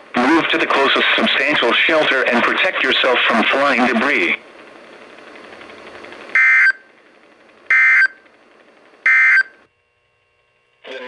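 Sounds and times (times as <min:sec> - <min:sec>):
faint radio hiss: 0:00.0 - 0:06.3, 0:10.8 - 0:11.0.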